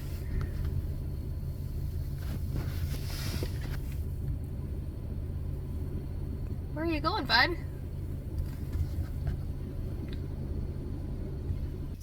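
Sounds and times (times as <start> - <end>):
soft rustle: 0.0 - 4.2
car engine idling: 0.0 - 12.0.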